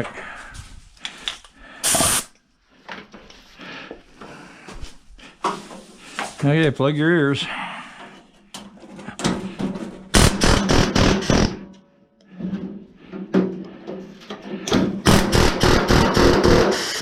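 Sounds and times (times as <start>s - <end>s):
air chisel hammering metal: 15.1s - 17.0s.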